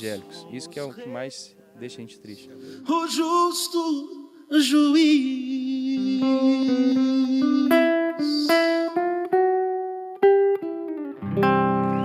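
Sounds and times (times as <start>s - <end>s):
man singing: 0.0s - 9.3s
acoustic guitar: 0.0s - 12.0s.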